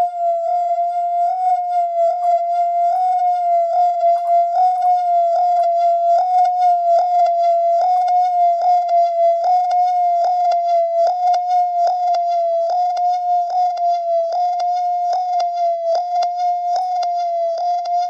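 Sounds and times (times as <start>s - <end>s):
pulsing high-pitched tone: 0.0s - 18.0s.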